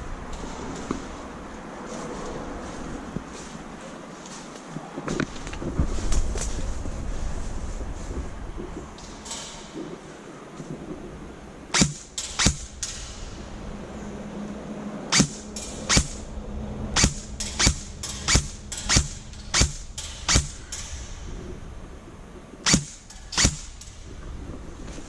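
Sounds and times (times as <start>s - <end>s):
airsoft gun shots: 11.7s - 13.1s, 15.1s - 16.2s, 17.0s - 21.1s, 22.6s - 23.9s.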